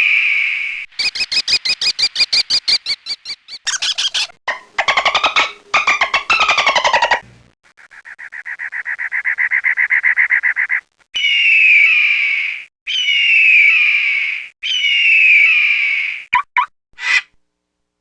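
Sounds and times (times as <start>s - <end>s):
harsh descending bird calls: 0.0s - 7.2s, 11.2s - 16.3s
bird chirps: 0.7s - 7.2s
bird trilling: 1.0s - 7.2s, 12.9s - 16.0s.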